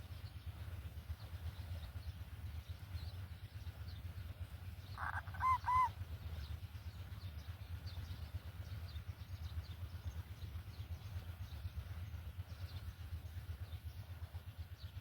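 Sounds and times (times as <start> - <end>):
bird honk-like calls: 5.0 - 5.9.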